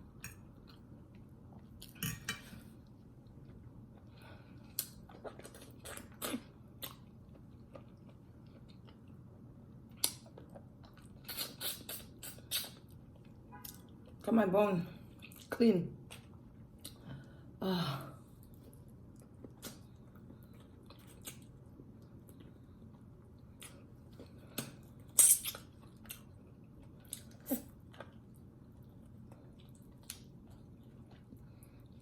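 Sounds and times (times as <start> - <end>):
person chewing: 3.4 - 9.2, 9.9 - 14.2, 18.4 - 32.0.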